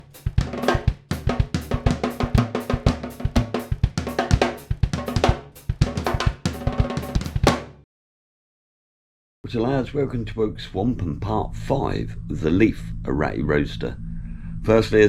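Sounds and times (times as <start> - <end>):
drum kit fast beat with cymbals: 0.0 - 7.8.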